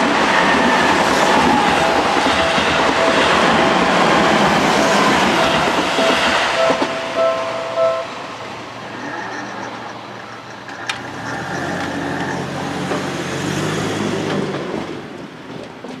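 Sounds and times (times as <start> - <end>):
vehicles rumbling over crossing: 0.6 - 15.5
level-crossing warning bell: 1.3 - 10.6.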